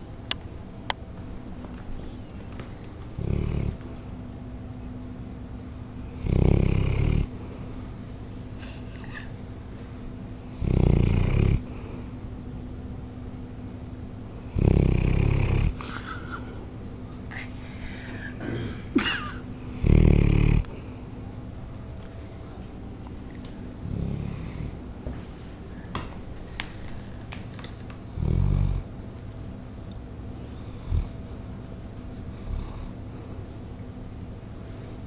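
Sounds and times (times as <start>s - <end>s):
dog snoring: 3.1s - 3.9s, 6.0s - 7.3s, 10.4s - 11.9s, 14.5s - 15.8s, 19.7s - 20.8s, 23.8s - 24.8s, 28.1s - 28.9s, 30.7s - 31.2s, 32.3s - 33.0s.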